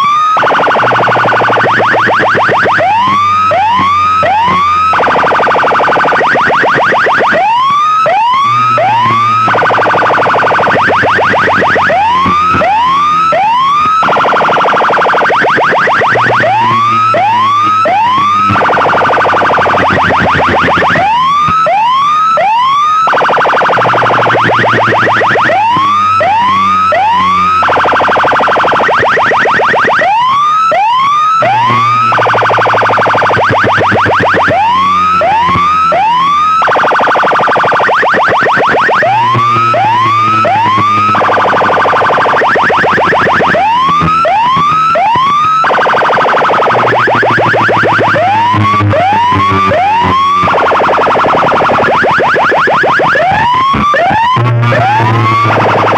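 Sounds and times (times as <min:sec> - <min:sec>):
rapid electronic sweeps: 0:00.0 - 0:55.9
rising electronic siren whoops: 0:00.0 - 0:55.9
low steady bass tone: 0:53.9 - 0:55.9.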